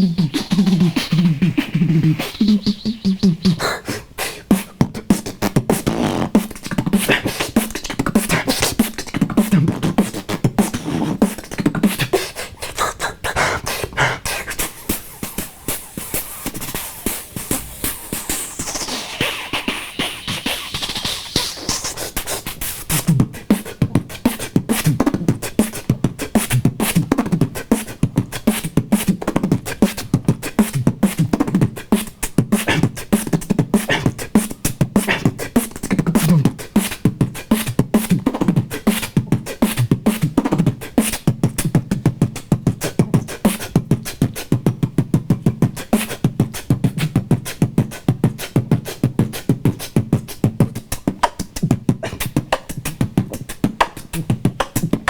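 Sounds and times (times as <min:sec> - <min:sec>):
humming vocal bass line: 0:00.0 - 0:04.0
beatboxing vocal drum hits: 0:00.0 - 0:55.0.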